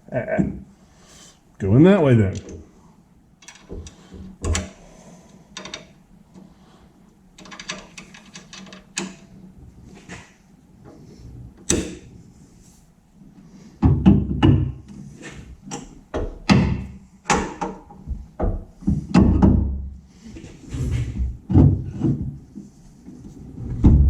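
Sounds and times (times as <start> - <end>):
metal knocks and clanks of tools: 3.4 - 4.8.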